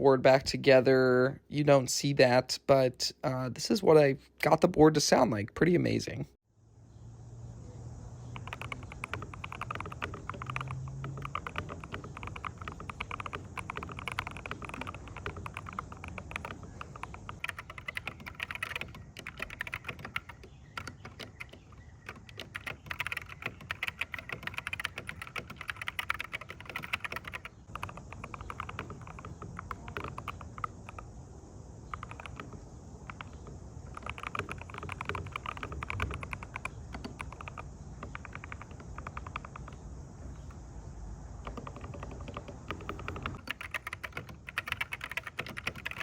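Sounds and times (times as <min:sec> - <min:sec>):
keyboard typing clicks: 0:08.3 - 0:31.1, 0:31.9 - 0:39.8, 0:41.4 - 0:46.0.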